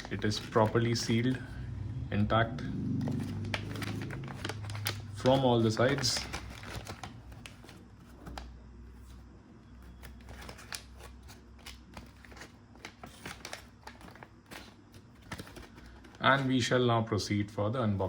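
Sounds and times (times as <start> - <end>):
packet rustling and clicking: 0.0 - 1.4, 3.0 - 8.5, 9.9 - 16.5.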